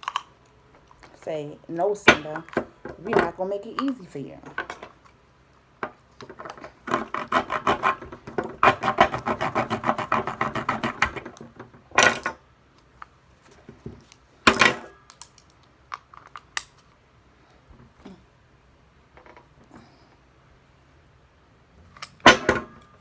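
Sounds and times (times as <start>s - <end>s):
tool scraping hard plastic: 6.5s - 11.5s.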